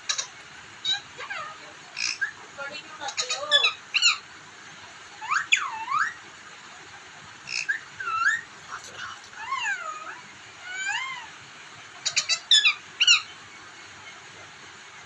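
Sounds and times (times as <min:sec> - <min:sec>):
parrot whistling calls: 0:00.1 - 0:02.4, 0:03.1 - 0:04.2, 0:05.2 - 0:06.2, 0:07.5 - 0:08.5, 0:12.0 - 0:13.3.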